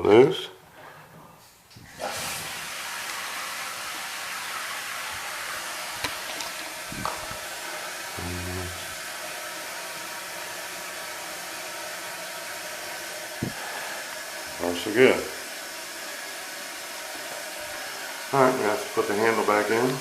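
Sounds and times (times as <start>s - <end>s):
water hissing into toilet tank: 1.8s - 20.0s.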